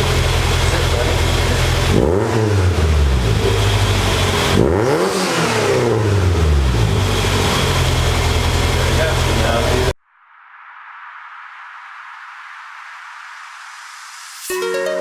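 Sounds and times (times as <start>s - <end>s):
car engine idling and revving: 0.0s - 9.9s.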